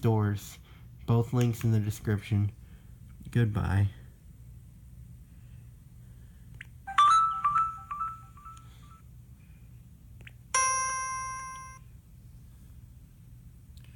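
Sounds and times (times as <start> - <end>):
steady low hum: 0.0 - 13.9
bright bell-like tone: 6.9 - 9.0, 10.6 - 11.8
electronic chime tones: 6.9 - 9.0, 10.6 - 11.8.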